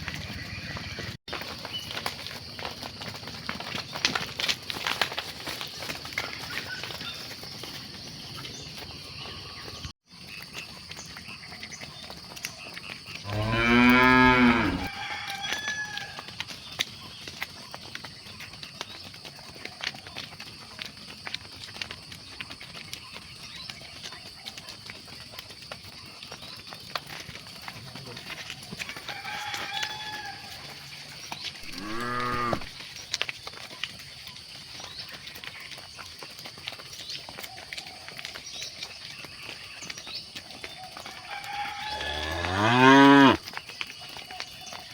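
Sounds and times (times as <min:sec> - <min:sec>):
small clicks and rustles: 0:01.3 - 0:08.9, 0:15.2 - 0:41.9, 0:43.4 - 0:44.9
cow mooing: 0:13.2 - 0:14.9, 0:31.6 - 0:32.7, 0:41.8 - 0:43.4.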